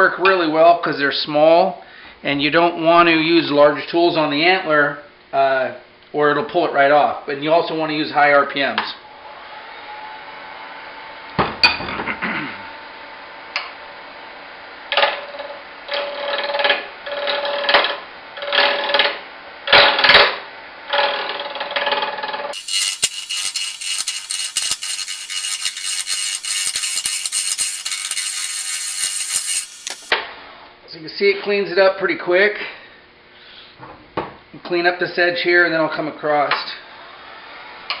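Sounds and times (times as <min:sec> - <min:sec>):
lathe running: 0:22.6 - 0:30.1
turning tool scraping antler: 0:22.6 - 0:30.1.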